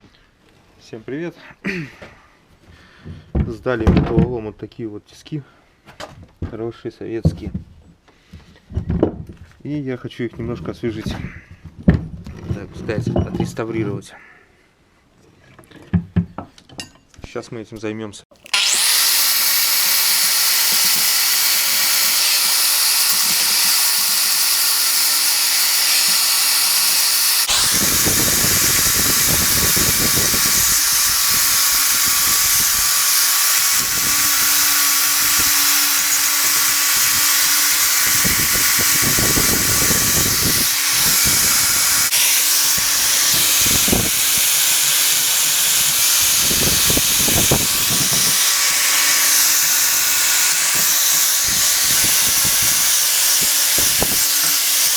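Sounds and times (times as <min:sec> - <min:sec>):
electric power tool whining: 0:18.3 - 0:54.9.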